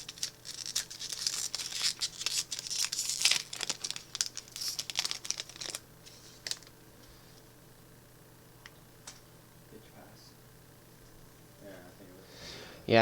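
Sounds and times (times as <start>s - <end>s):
plastic wrapper crinkling and tearing: 0.0s - 6.8s.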